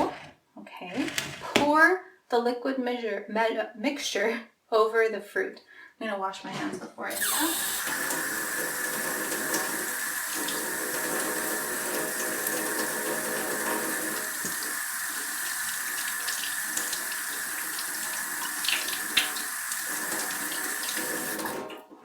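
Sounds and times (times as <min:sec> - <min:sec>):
tap running: 0:07.1 - 0:21.8
hands washing with splashes: 0:07.8 - 0:21.8.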